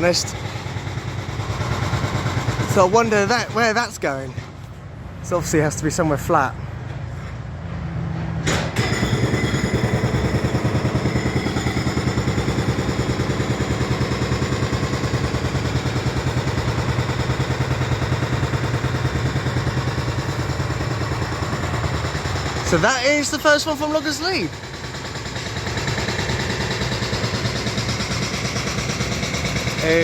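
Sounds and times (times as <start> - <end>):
demolition machinery pounding: 0.0 - 4.6, 8.2 - 30.0.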